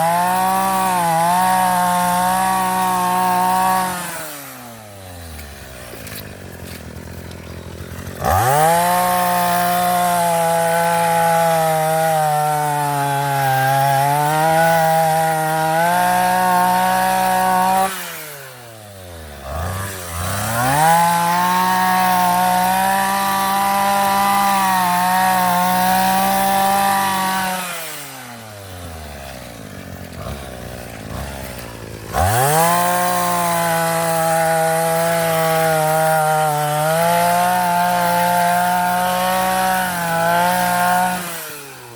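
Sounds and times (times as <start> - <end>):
earth auger petrol engine revving: 0.0 - 41.9.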